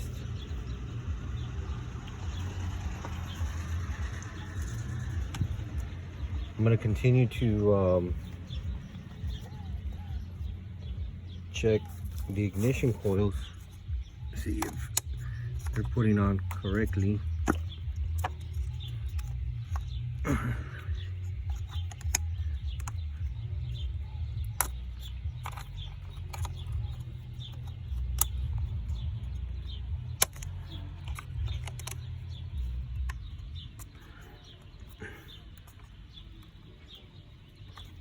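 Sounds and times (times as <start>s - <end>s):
continuous low rumble: 0.0s - 38.0s
ignition coils clicking into place: 14.3s - 20.2s, 20.8s - 34.0s.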